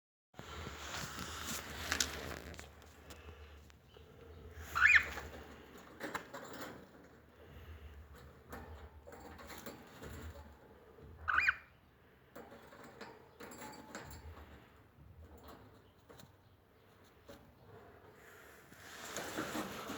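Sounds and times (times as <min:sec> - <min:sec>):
cockatiel chirping: 0:04.5 - 0:05.4, 0:11.2 - 0:11.7.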